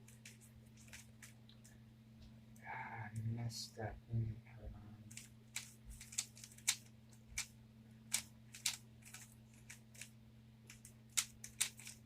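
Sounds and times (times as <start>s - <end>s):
faint low hum: 0.0s - 12.0s
puzzle cube plastic clicks: 5.1s - 7.5s, 8.1s - 10.1s, 10.7s - 12.0s.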